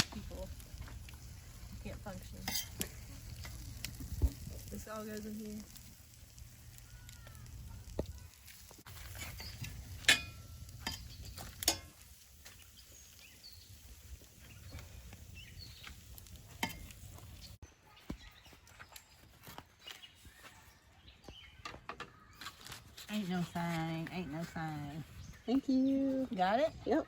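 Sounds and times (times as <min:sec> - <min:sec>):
utensils clinking against dishes: 0:02.4 - 0:02.9, 0:09.1 - 0:12.0.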